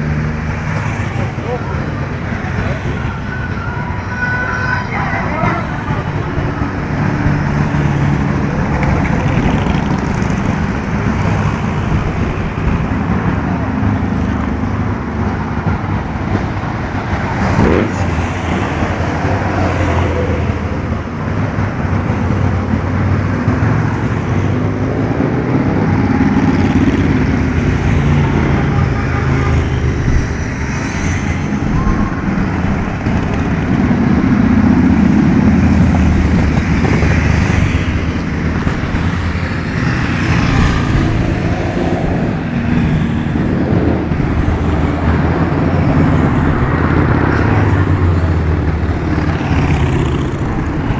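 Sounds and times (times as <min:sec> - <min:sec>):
road noise: 0:00.0 - 0:50.9
vehicle engines running: 0:00.0 - 0:50.9.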